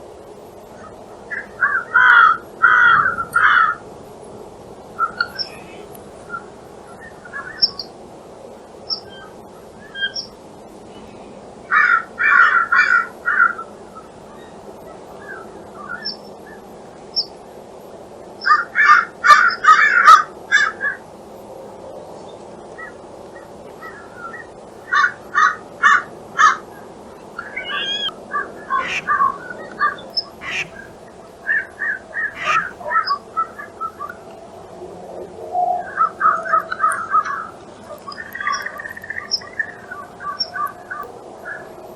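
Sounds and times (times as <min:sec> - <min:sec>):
crows cawing: 0:28.8 - 0:29.3, 0:30.4 - 0:31.0, 0:32.4 - 0:32.9.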